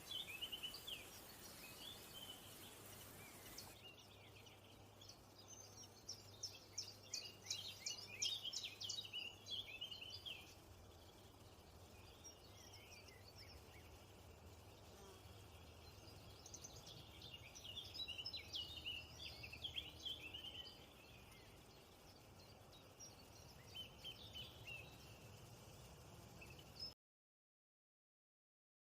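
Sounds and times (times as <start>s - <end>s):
small birds twittering: 0.0s - 27.0s.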